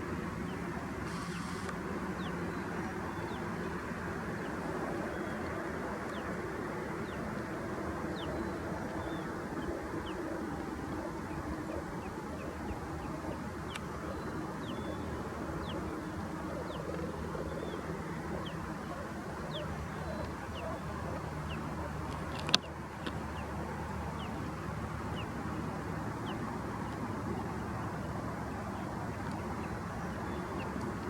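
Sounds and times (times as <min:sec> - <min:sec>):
cormorants croaking: 0:15.6 - 0:22.7.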